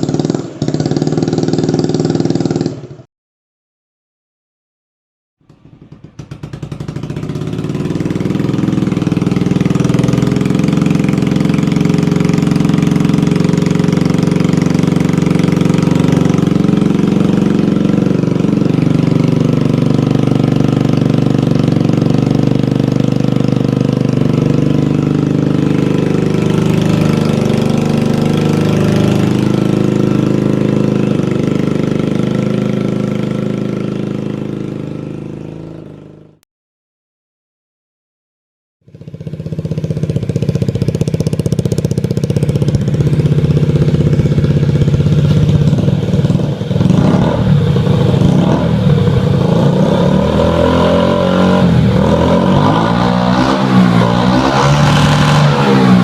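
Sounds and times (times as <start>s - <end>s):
scooter engine idling: 0.0s - 3.0s, 5.4s - 36.4s, 38.9s - 56.0s.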